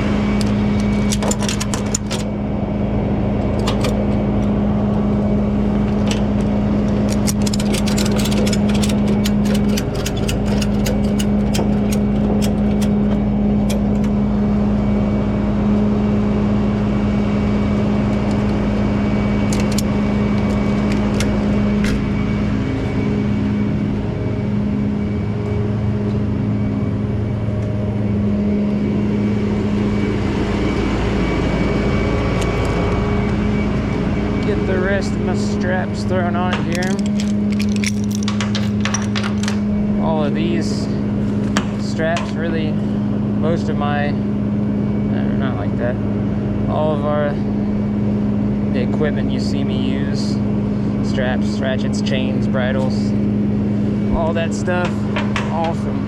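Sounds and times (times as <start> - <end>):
truck engine idling: 0.0 - 56.0
ratchet strap clicking: 6.9 - 14.1.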